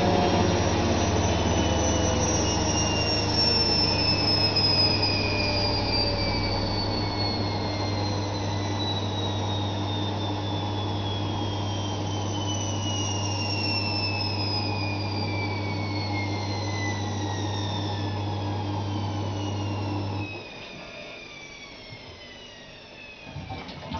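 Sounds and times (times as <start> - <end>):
low hum: 0.0 - 12.5
washing machine motor whine: 0.0 - 23.9.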